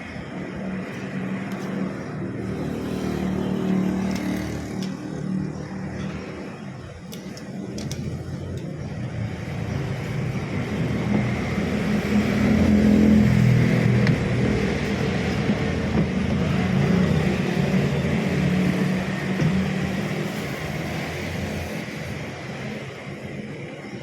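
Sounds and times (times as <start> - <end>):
washing machine motor humming: 7.8 - 21.3.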